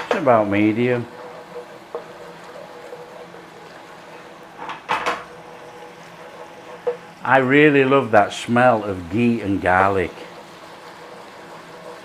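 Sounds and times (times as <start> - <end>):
kitchenware clattering: 0.0 - 2.2, 4.5 - 5.4
oven fan whirring: 0.0 - 12.0
paste frying in oil: 0.0 - 12.0.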